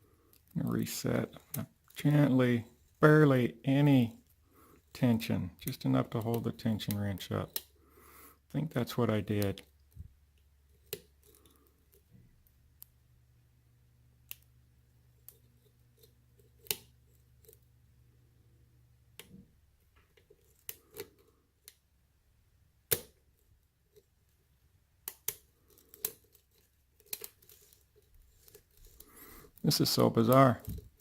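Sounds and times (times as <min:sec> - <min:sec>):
lock pick clicking in lock: 0:22.9 - 0:23.2.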